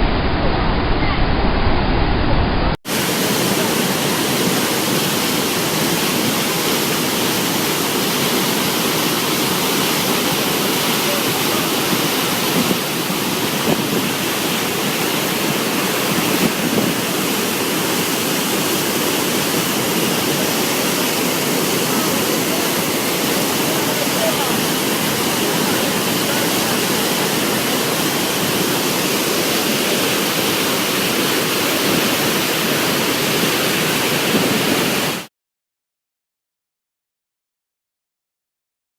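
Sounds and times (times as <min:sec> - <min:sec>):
waterfall rushing: 0:02.9 - 0:35.3.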